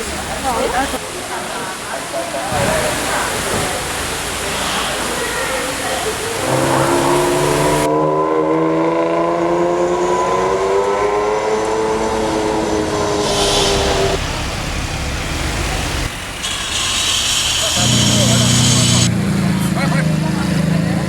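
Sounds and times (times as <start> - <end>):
sports car engine accelerating: 6.2 - 16.1, 17.8 - 21.0.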